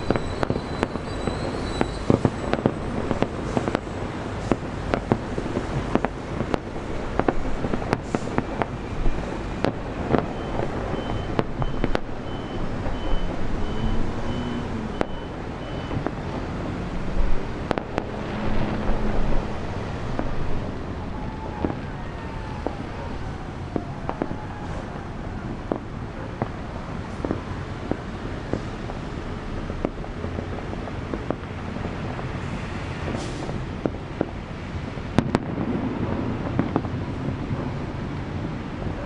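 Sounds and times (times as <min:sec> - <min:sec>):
crowd and traffic rumble: 0:00.0 - 0:39.0
fireworks bangs and pops: 0:00.0 - 0:39.0
faint high beep: 0:10.3 - 0:16.0.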